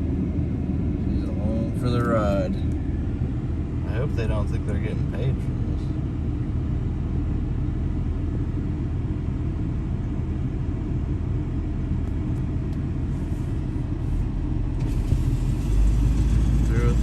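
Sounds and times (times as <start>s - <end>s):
heavy machine engine running: 13.0s - 17.0s.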